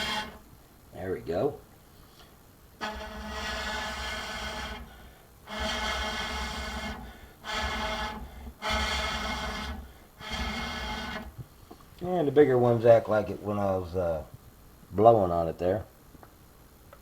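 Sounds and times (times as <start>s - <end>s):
person blowing hard into stove: 0.0s - 0.4s, 2.8s - 11.5s.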